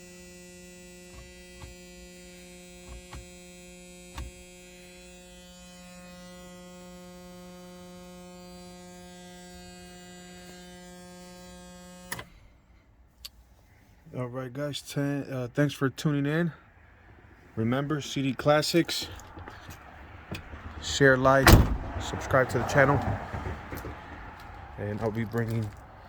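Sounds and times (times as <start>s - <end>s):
electric buzz: 0.0s - 12.3s.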